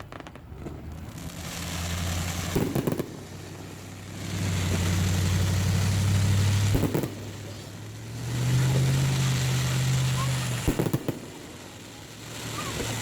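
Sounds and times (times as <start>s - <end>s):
engine humming: 0.6s - 13.0s
sharp cracks: 1.3s - 7.7s.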